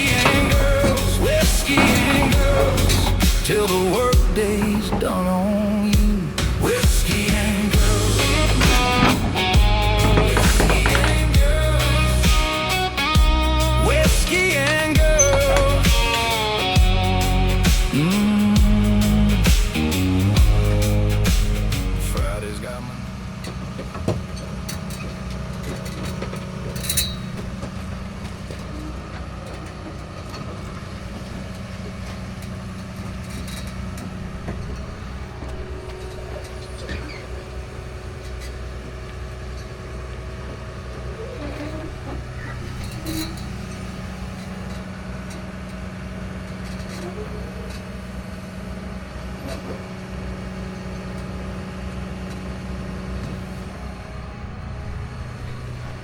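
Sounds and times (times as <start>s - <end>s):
sharp metallic clanks: 0.0s - 39.8s, 41.1s - 45.4s
heavy diesel engine running: 0.0s - 56.0s.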